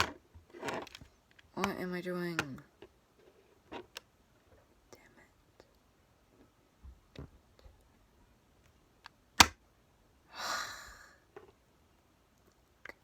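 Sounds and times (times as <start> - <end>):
puzzle cube clicking: 0.0 - 2.8, 9.0 - 9.6
person sighing: 10.3 - 11.3.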